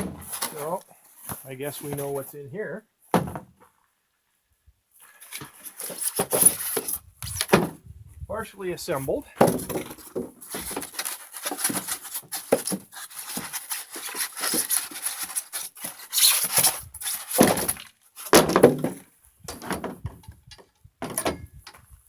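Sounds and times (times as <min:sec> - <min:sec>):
cardboard rustling: 0:00.0 - 0:02.3, 0:05.0 - 0:07.8, 0:09.4 - 0:20.0
knocks and thumps: 0:03.1 - 0:03.6, 0:09.4 - 0:10.9.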